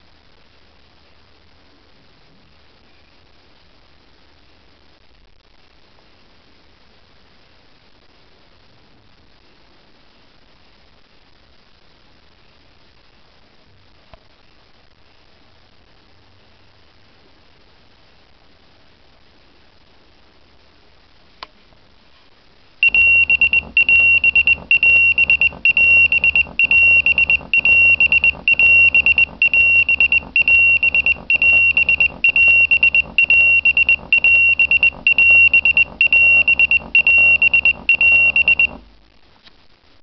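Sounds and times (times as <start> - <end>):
pager high beeps: 22.8 - 38.8.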